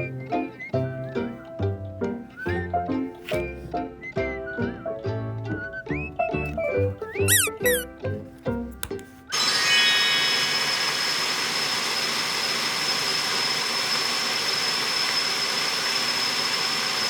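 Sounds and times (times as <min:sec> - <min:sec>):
electric motor appliance whining: 0:09.3 - 0:17.0.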